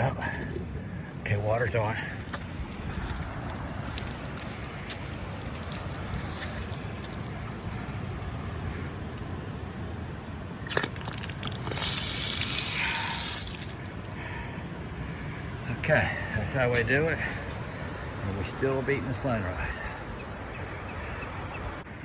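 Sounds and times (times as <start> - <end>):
water gushing from outdoor faucet: 0.2 - 14.0.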